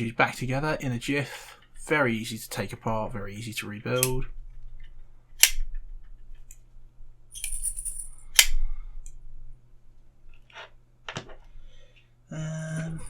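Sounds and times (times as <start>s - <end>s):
folding knife clicking: 4.0s - 4.2s, 5.4s - 5.6s, 8.3s - 8.6s
metal-on-metal jingle: 7.4s - 8.3s.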